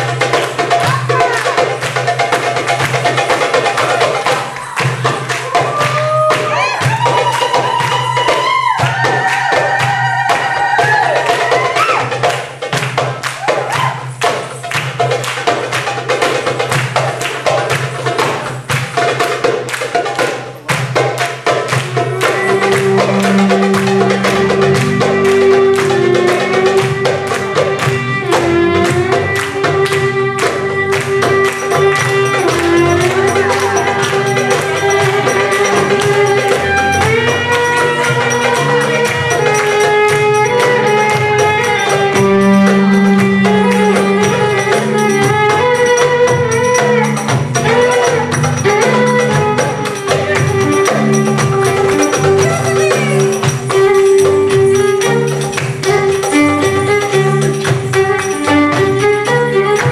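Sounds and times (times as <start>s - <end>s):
percussion with tambourine: 0.0s - 59.9s
violin melody: 20.6s - 59.9s.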